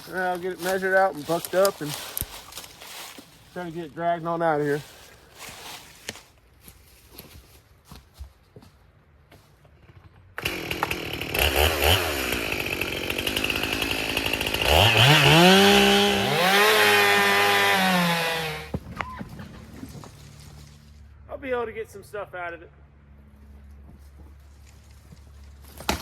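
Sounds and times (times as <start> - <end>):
chainsaw revving: 9.8 - 18.7.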